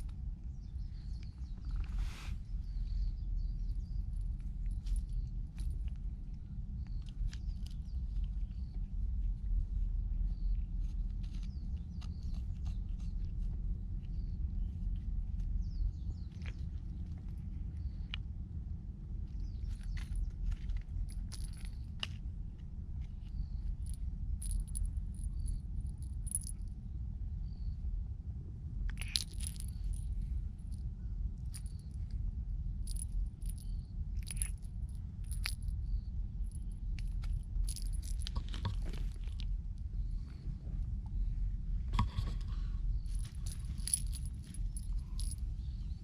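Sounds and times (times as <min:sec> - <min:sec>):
steady low rumble: 0:00.0 - 0:46.0
metallic jingles and clicks: 0:03.5 - 0:07.8, 0:19.5 - 0:22.2, 0:23.3 - 0:26.7, 0:28.9 - 0:32.1, 0:32.8 - 0:39.5, 0:42.0 - 0:46.0.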